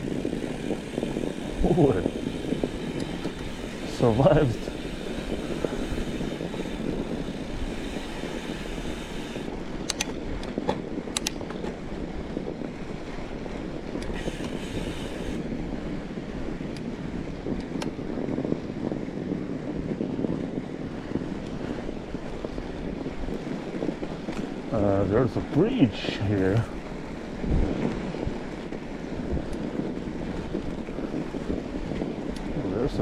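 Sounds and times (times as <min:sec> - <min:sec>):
tyres rolling over snow: 0:00.0 - 0:09.4
bike clicks and rattles: 0:00.0 - 0:19.3, 0:20.3 - 0:24.7, 0:26.4 - 0:32.9
wind on microphone: 0:00.0 - 0:33.0.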